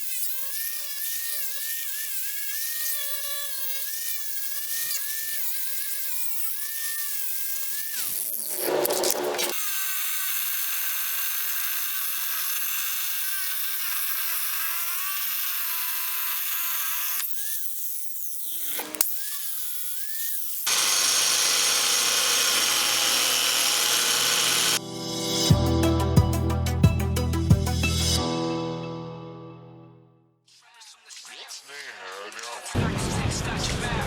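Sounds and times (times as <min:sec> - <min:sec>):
angle grinder cutting tile: 0:00.0 - 0:24.9.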